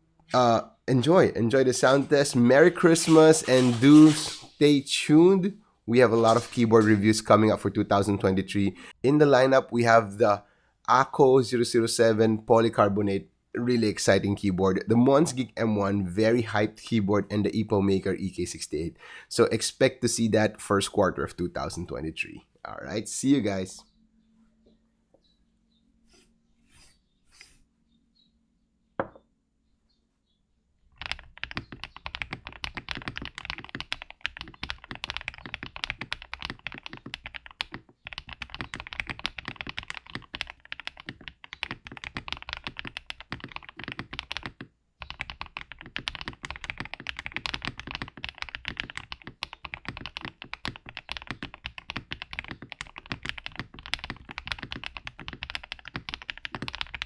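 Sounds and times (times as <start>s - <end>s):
mechanical keyboard typing: 31.0s - 57.0s.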